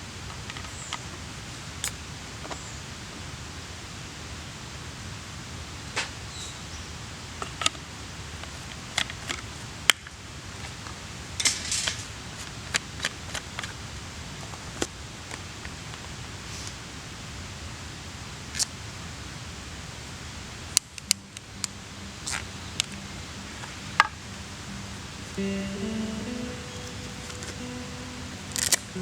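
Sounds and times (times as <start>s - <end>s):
steady hiss: 0.0s - 29.0s
campfire crackling: 20.5s - 29.0s.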